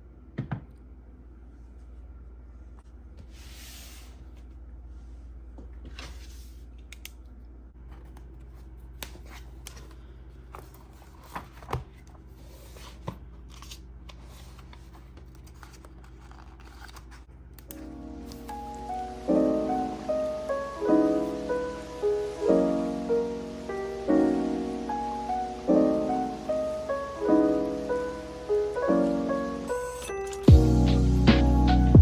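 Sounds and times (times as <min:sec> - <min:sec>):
paper rustle: 0:07.8 - 0:17.3.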